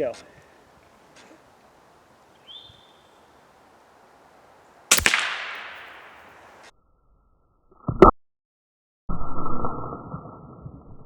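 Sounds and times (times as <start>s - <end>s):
air rifle shot: 4.9s - 6.6s.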